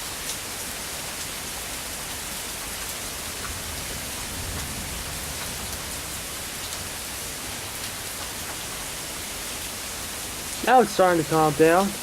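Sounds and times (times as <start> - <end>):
rain pattering on surfaces: 0.0 - 12.0.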